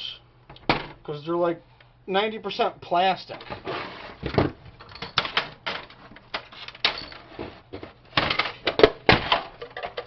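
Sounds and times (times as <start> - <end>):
printer parts clattering and cracking: 4.2 - 7.3, 8.1 - 10.0.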